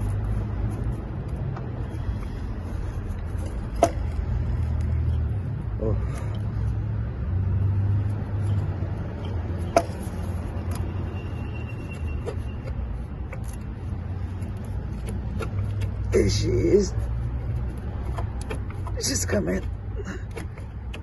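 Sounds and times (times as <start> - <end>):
sharp metal clicks and knocks: 8.2 - 16.2, 17.2 - 21.0.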